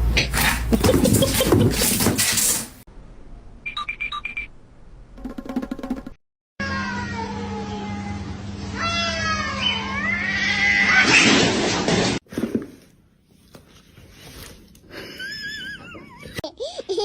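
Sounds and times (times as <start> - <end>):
cat meowing and yowling: 8.8 - 11.2.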